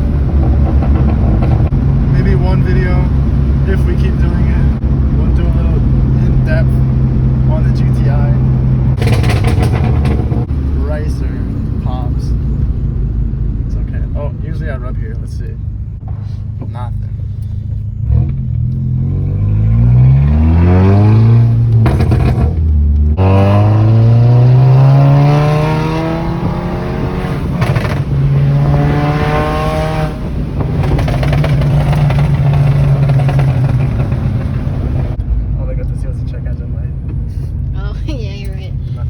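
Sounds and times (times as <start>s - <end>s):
car engine accelerating hard: 0.0s - 15.4s, 18.0s - 37.9s.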